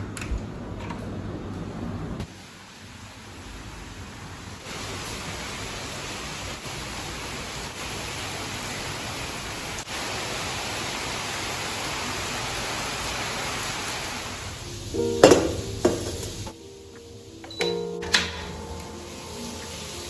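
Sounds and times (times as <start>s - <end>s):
heavy rain: 2.3s - 17.4s, 18.4s - 20.0s.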